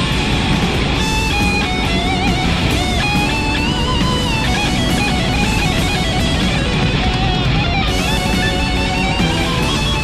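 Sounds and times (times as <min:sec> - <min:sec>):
lead guitar bending notes: 0:00.0 - 0:10.0
rock band with distorted guitar: 0:00.0 - 0:10.0.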